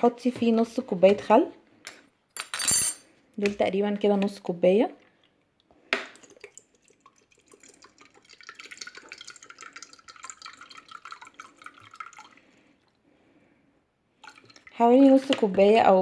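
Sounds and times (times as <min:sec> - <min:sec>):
liquid trickling into bowl: 0:06.2 - 0:13.0, 0:14.2 - 0:14.9.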